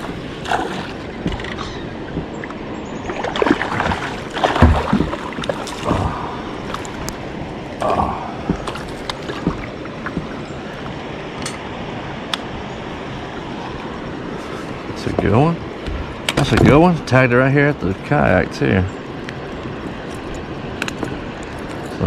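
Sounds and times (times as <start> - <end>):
water splashing and sloshing: 0.0 - 22.0
knocks against kayak hull: 3.3 - 7.1, 8.4 - 10.4.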